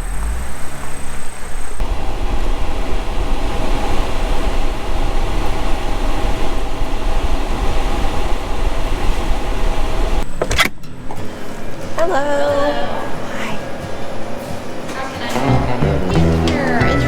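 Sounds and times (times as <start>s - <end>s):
vehicle road noise rumble: 0.0s - 10.3s.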